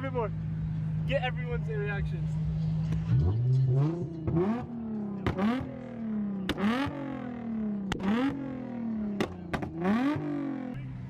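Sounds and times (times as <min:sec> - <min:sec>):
car engine revving: 0:00.2 - 0:11.0
exhaust bangs and pops: 0:02.8 - 0:07.2, 0:07.8 - 0:10.4.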